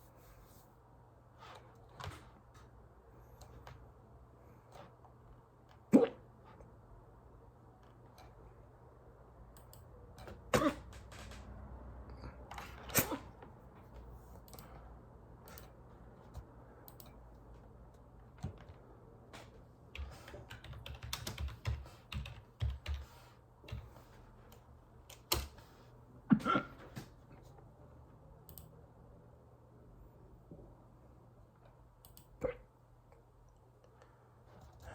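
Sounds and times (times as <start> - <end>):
person hiccuping: 5.9 - 6.2, 10.5 - 10.9, 26.3 - 26.8.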